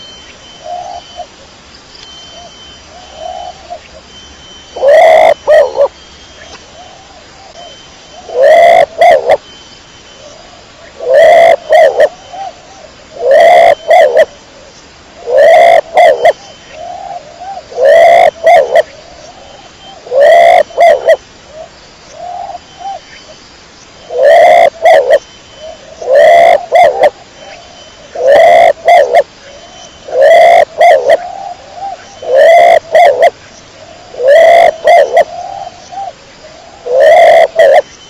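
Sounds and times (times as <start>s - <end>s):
pigeon cooing: 4.8s - 5.9s, 6.8s - 9.4s, 11.0s - 14.4s, 15.2s - 18.9s, 20.0s - 21.2s, 24.1s - 25.2s, 25.8s - 27.2s, 28.1s - 29.3s, 30.0s - 33.4s, 34.0s - 37.9s.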